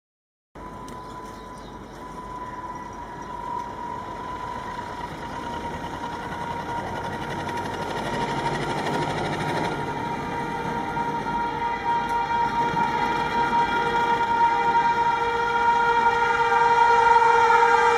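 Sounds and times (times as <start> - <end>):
steady high tone: 0.6 - 17.9
train rattling on tracks: 0.6 - 17.9.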